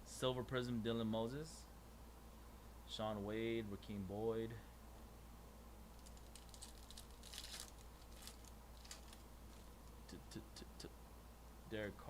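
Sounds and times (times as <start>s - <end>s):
cards rustling: 5.9s - 9.7s.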